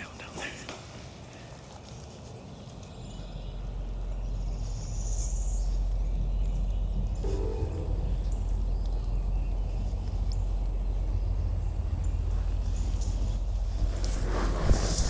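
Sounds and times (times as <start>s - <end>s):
faint high chirp: 7.2s - 9.5s.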